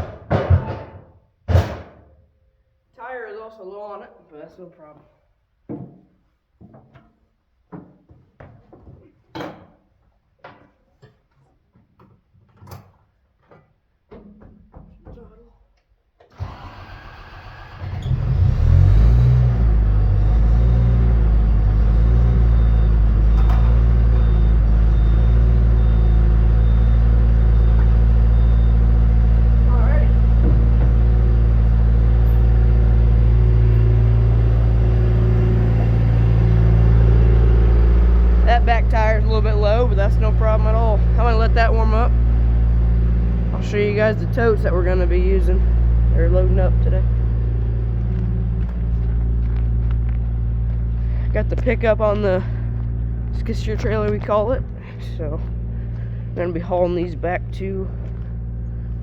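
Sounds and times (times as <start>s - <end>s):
irregular knocks and clicks: 5.7s - 9.8s
diesel engine idling: 16.4s - 59.0s.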